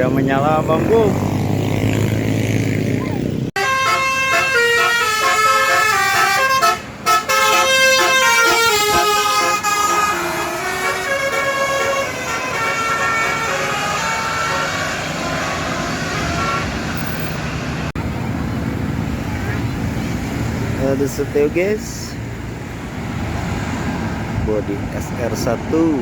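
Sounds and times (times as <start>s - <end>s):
road traffic noise: 0.0s - 26.0s
bus musical horn playing a tune: 3.6s - 17.2s.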